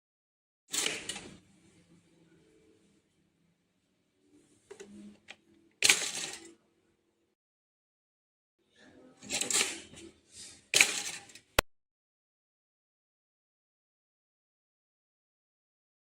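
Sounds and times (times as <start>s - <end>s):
toaster carriage snapping up: 5.8s - 6.5s, 9.3s - 9.9s, 10.8s - 11.4s.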